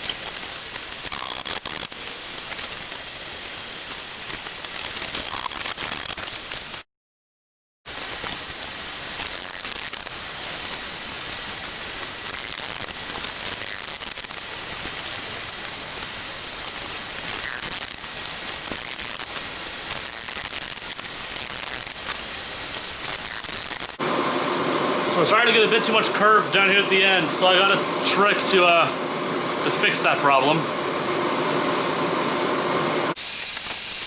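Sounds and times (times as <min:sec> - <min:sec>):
forge burner hissing: 0:07.9 - 0:34.0.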